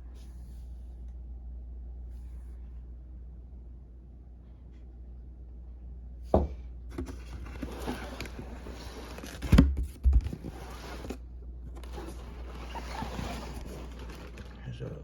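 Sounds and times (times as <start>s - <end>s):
low steady hum: 0.0s - 15.0s
scraping and rustling: 6.9s - 15.0s.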